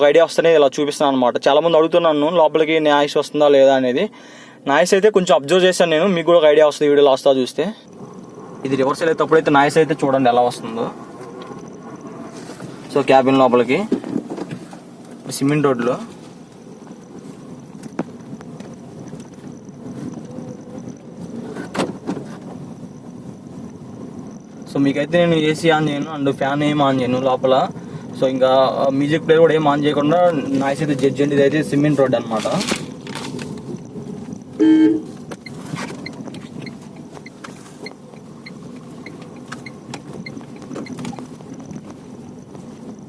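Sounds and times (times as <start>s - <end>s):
tyre and engine drone: 5.9s - 43.0s
short car horn toot: 34.6s - 35.1s.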